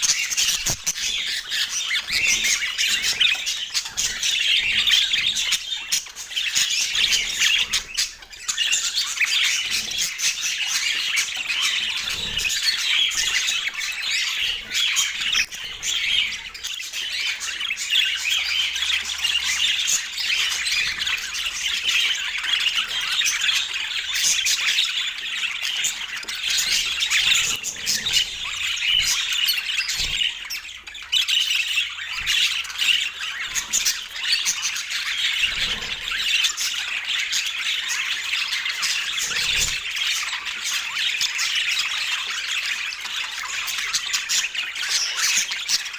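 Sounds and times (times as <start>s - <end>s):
budgerigars chattering: 0.0s - 45.9s.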